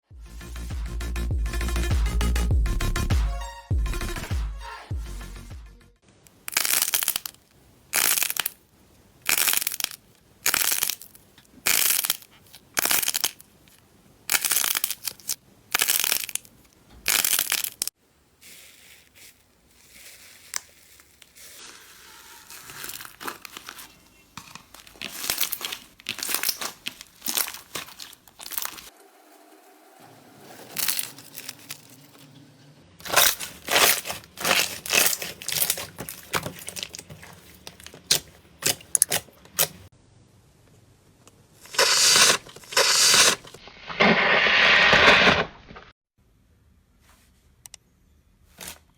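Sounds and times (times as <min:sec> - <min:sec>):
slime being squeezed crackling: 0:08.0 - 0:08.6, 0:09.2 - 0:11.1, 0:14.3 - 0:16.5, 0:19.9 - 0:28.9, 0:33.0 - 0:39.8, 0:41.7 - 0:43.5.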